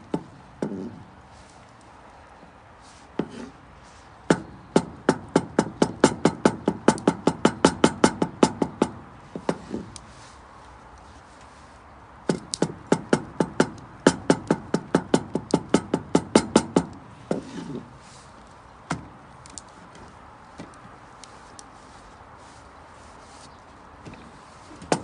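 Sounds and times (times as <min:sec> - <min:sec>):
light taps: 0:18.4 - 0:21.7.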